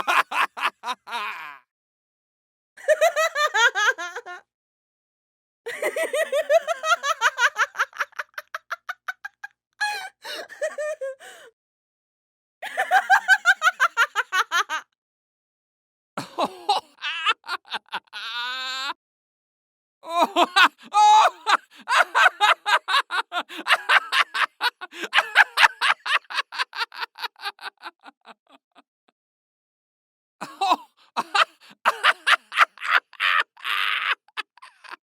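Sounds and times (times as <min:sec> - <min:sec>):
person laughing: 0:00.0 - 0:01.6, 0:02.8 - 0:04.4, 0:05.7 - 0:11.5, 0:16.2 - 0:19.0, 0:20.1 - 0:28.8, 0:30.4 - 0:35.0.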